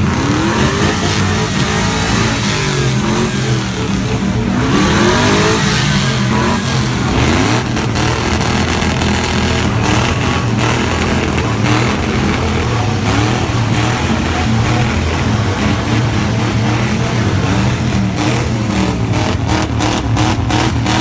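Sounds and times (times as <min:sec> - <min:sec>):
car engine revving: 0:00.0 - 0:21.0
sharp exhaust pulses: 0:00.0 - 0:21.0.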